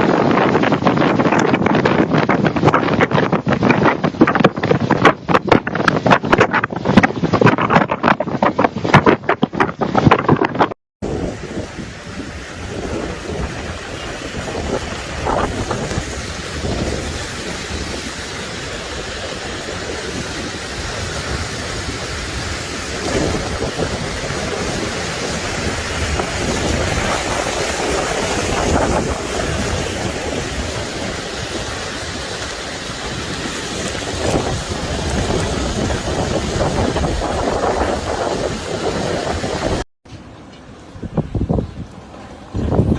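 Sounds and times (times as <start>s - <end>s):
strong wind: 0.0s - 42.9s
heavy rain: 11.0s - 39.9s.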